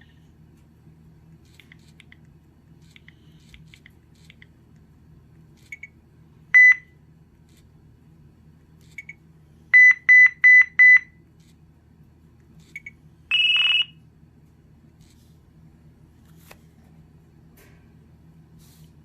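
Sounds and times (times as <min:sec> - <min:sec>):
high phone beeps: 0:12.8 - 0:13.9.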